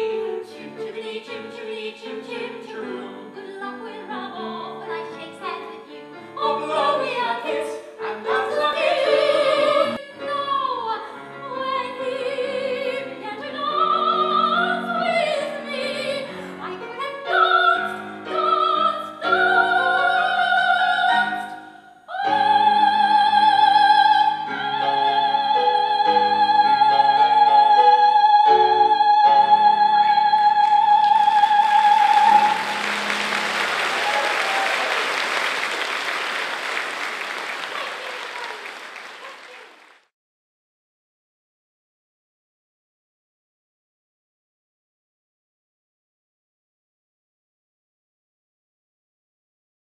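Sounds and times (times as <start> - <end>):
woman singing operatically: 0.0 - 32.6
piano accompaniment: 0.0 - 34.6
audience applause: 31.0 - 40.1.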